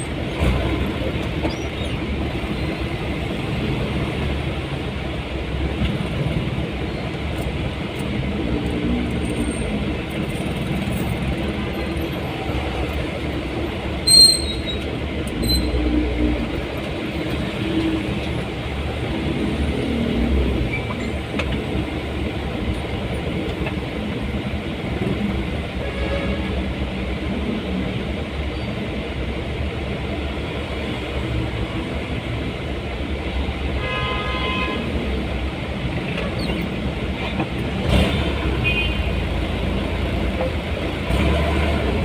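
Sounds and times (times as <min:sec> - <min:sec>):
vehicle and road noise: 0:00.0 - 0:42.0
sharp high-pitched squeak: 0:14.0 - 0:14.8, 0:15.4 - 0:15.9.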